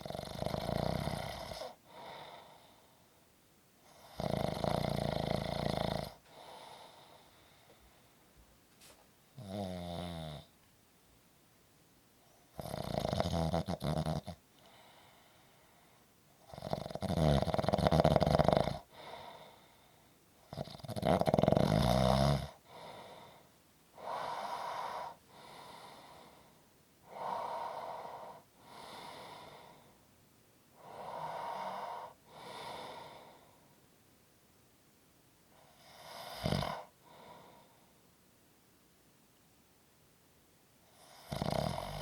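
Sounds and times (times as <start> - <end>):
person snoring: 0.0 - 2.8, 3.9 - 7.4, 9.4 - 10.5, 12.5 - 15.1, 16.4 - 19.6, 20.5 - 23.4, 24.0 - 26.5, 35.6 - 37.8, 40.9 - 42.0
heavy breathing: 1.8 - 3.2, 6.2 - 9.0, 14.6 - 16.1, 18.9 - 20.2, 22.6 - 30.0, 30.8 - 33.8, 37.0 - 38.0.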